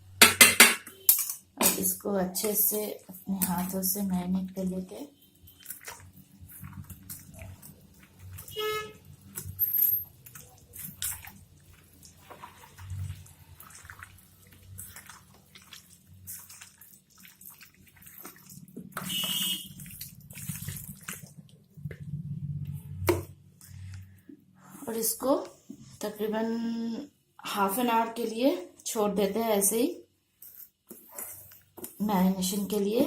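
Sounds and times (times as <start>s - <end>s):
wet squelching of meat by hand: 9.2s - 22.0s.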